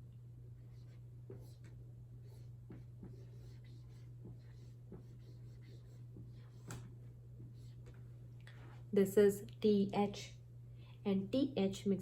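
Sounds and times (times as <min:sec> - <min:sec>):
steady low hum: 0:00.0 - 0:12.0
pen scratching and tapping: 0:02.7 - 0:06.9.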